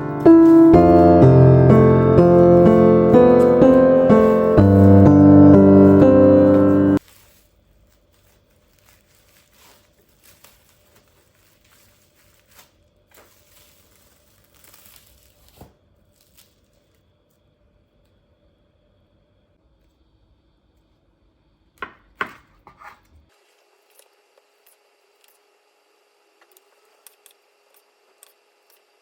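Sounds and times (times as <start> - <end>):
background piano music: 0.0 - 7.0
rustling: 2.2 - 17.4.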